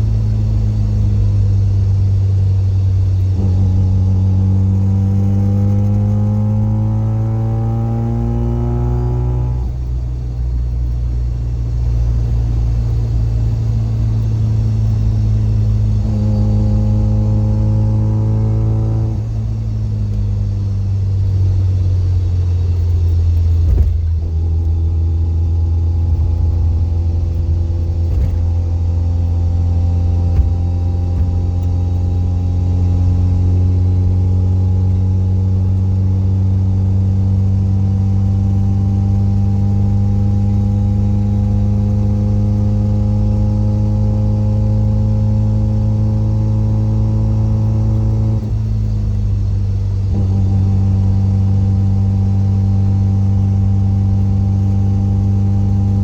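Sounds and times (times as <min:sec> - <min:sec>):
differential gear whine: 0:00.0 - 0:38.1.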